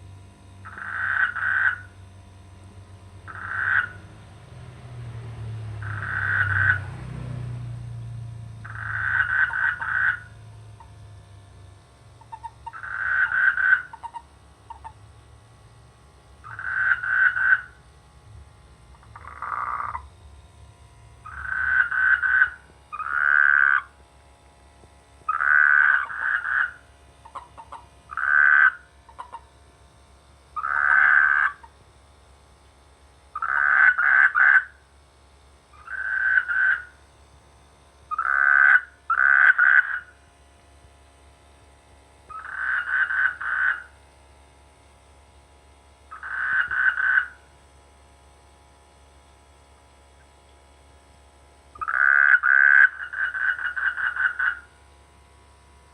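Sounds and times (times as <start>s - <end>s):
frogs croaking: 0.4s - 2.2s, 3.1s - 11.0s, 12.1s - 15.0s, 16.4s - 17.8s, 18.9s - 20.1s, 21.2s - 24.0s, 25.2s - 29.6s, 30.5s - 31.8s, 33.3s - 34.9s, 35.7s - 37.1s, 38.0s - 40.2s, 42.2s - 44.0s, 46.0s - 47.5s, 51.7s - 54.9s.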